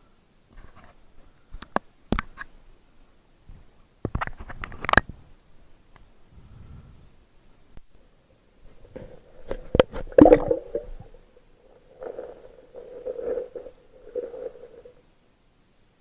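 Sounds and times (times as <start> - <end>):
underwater clicks and knocks: 8.9 - 11.0
bubbling gurgles: 9.1 - 15.0.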